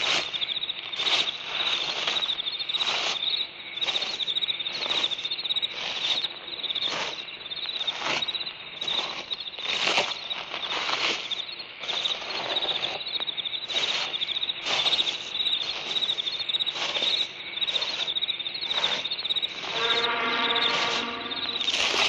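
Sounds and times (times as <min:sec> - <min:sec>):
crickets chirping: 0:00.0 - 0:22.0
low pitched call: 0:19.7 - 0:22.0
short rushes of noise: 0:19.7 - 0:22.0.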